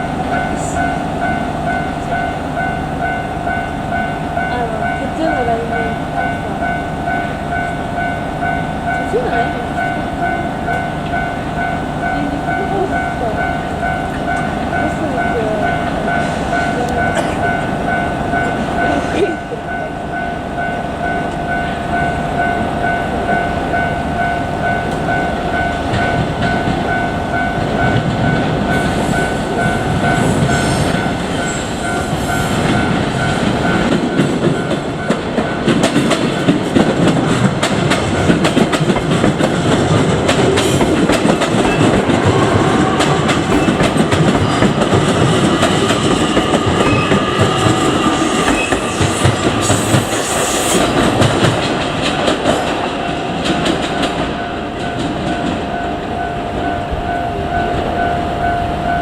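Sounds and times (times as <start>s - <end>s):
level crossing alarm ringing: 0.0s - 51.3s
train wheels clicking over rail joints: 24.8s - 55.9s.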